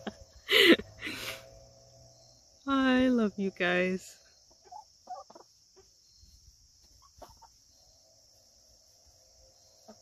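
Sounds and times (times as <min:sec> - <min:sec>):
chickens clucking softly: 0:04.4 - 0:08.4, 0:09.8 - 0:10.0.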